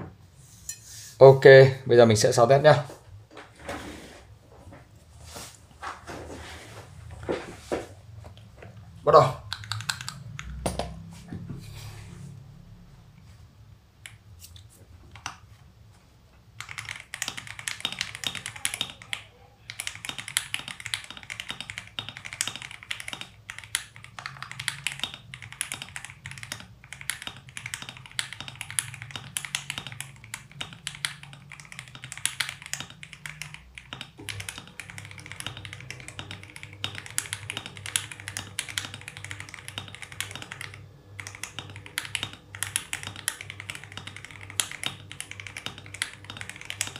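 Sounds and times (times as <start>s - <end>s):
mechanical keyboard typing: 9.1s - 10.8s, 15.1s - 15.4s, 16.5s - 46.9s.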